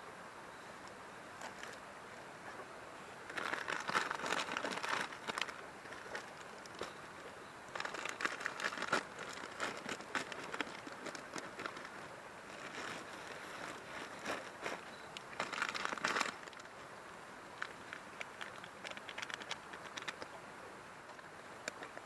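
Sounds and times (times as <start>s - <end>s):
steady background hiss: 0.0s - 22.0s
rustling and crinkling: 3.3s - 16.8s, 17.5s - 20.4s
scattered ticks: 17.6s - 20.3s.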